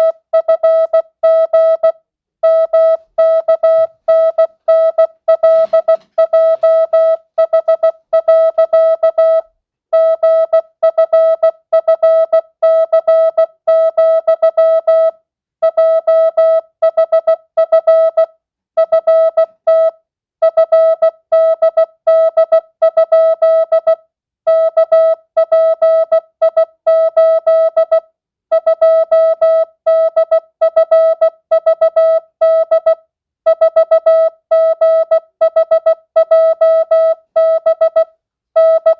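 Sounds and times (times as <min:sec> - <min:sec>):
morse code beeps: 0:00.0 - 0:09.4, 0:24.6 - 0:38.9.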